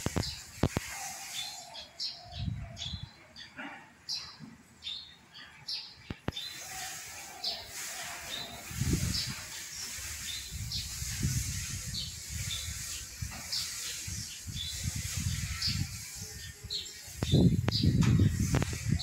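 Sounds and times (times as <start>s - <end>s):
steady hiss: 0.0s - 1.8s, 6.2s - 19.0s
small birds chirping: 0.0s - 19.0s.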